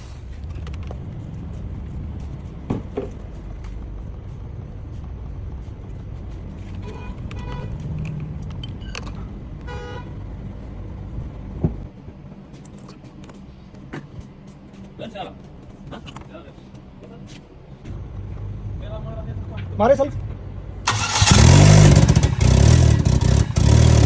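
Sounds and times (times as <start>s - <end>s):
car engine running: 0.0s - 24.0s
car horn toots: 6.8s - 8.2s, 9.6s - 10.3s
engine switch click: 20.9s - 21.4s.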